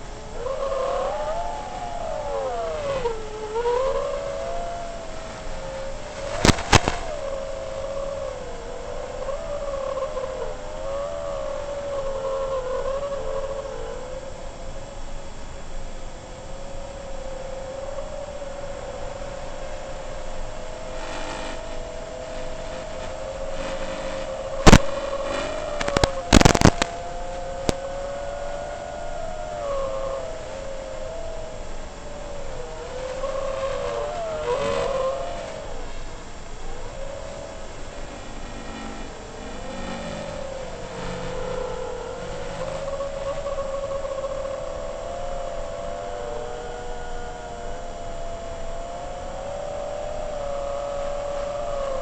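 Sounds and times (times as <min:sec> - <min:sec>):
drone motors whining: 0:00.0 - 0:52.0
loud sharp cracks: 0:06.3 - 0:07.2, 0:24.6 - 0:27.0.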